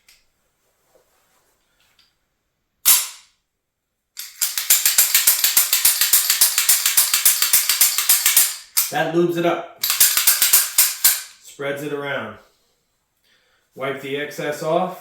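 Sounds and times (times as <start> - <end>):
pistol slide metallic snap: 2.9 - 3.3
rapid metal clicks: 4.2 - 9.0, 9.8 - 11.4.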